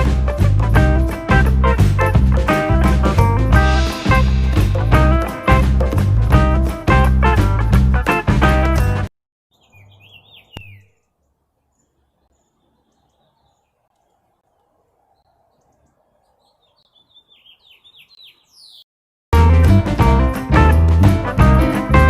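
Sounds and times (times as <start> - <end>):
background music: 0.0 - 9.1, 19.4 - 22.0
faint bird chirps: 9.5 - 18.9.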